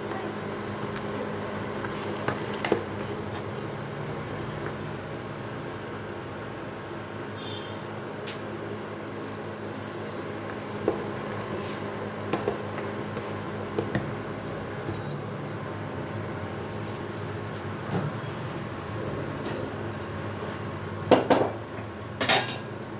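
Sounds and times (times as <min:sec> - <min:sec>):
utensils clinking against dishes: 0:21.1 - 0:22.8.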